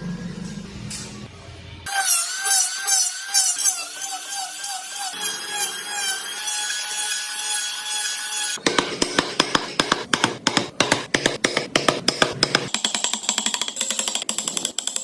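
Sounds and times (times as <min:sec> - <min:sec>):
small power tool cutting wood: 0:01.9 - 0:09.6.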